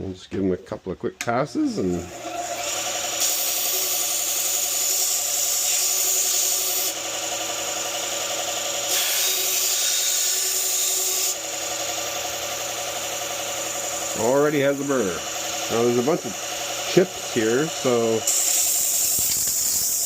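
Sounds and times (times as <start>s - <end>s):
sharpener motor whirring: 1.9s - 20.0s
knife grinding on sharpener: 2.6s - 7.0s, 8.8s - 11.7s, 13.8s - 20.0s.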